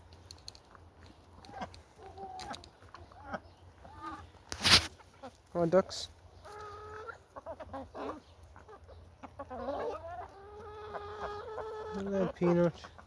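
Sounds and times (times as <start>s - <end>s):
chickens calling: 0.6s - 13.0s.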